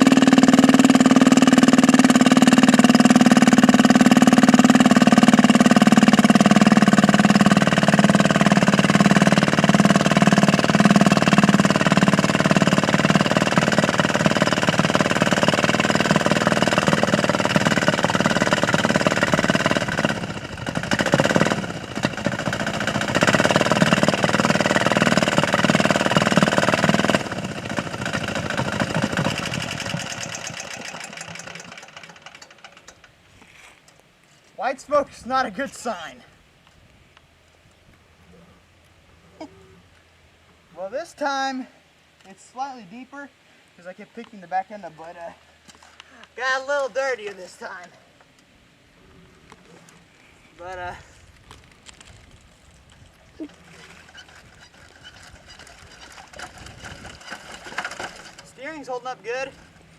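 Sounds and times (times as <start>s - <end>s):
diesel engine running under load: 0.0s - 33.2s.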